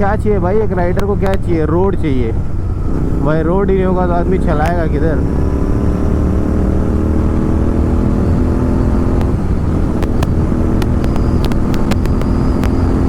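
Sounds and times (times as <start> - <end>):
exhaust crackles and pops: 0.0 - 1.7, 3.8 - 5.2, 6.4 - 13.0
motorcycle engine running: 0.0 - 13.0.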